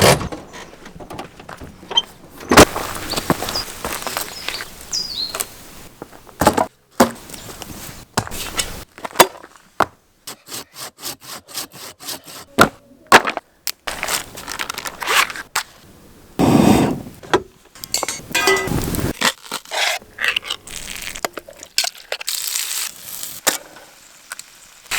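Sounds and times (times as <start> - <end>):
wood cracking and scraping: 0.0 - 4.7, 13.1 - 15.6.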